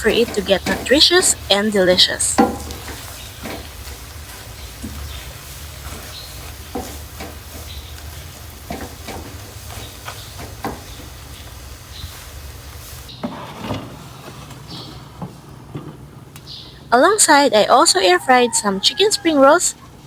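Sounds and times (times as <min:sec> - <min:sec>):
eggs sizzling in a pan: 0:00.0 - 0:13.1
stirring knocks and scrapes: 0:00.0 - 0:16.1.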